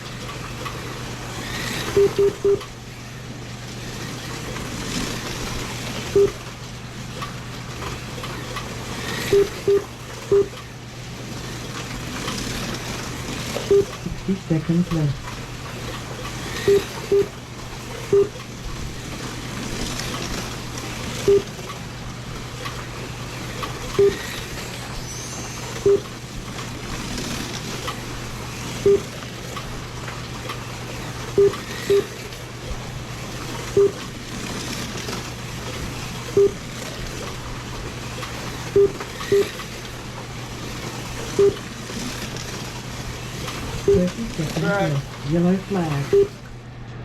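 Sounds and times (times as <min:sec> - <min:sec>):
short electronic beeps: 0:01.9 - 0:02.7, 0:06.1 - 0:06.4, 0:09.2 - 0:10.6, 0:13.7 - 0:14.0, 0:16.6 - 0:17.3, 0:18.1 - 0:18.4, 0:21.3 - 0:21.5, 0:24.0 - 0:24.3, 0:25.2 - 0:26.1, 0:28.8 - 0:29.1, 0:31.4 - 0:32.2, 0:33.8 - 0:34.0, 0:36.4 - 0:36.6, 0:38.8 - 0:39.5, 0:41.4 - 0:41.6, 0:43.9 - 0:44.2, 0:46.0 - 0:46.4.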